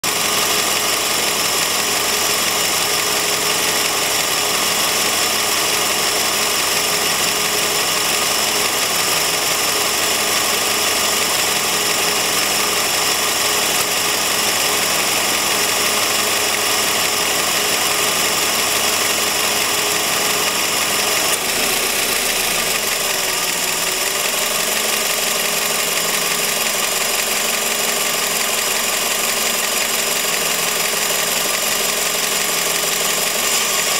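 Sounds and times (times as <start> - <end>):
car engine idling: 0.0 - 33.9
drive belt noise: 0.0 - 33.9.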